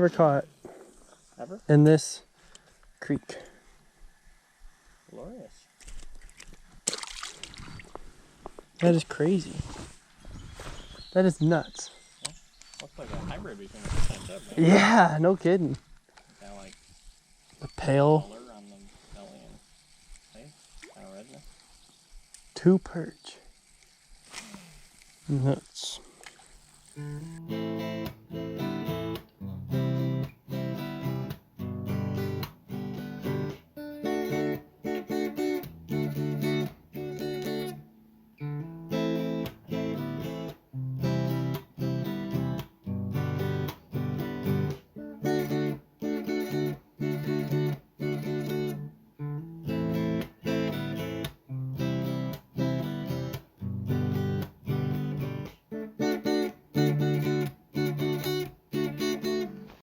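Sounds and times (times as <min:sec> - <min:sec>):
strummed acoustic guitar: 0:27.0 - 0:59.8.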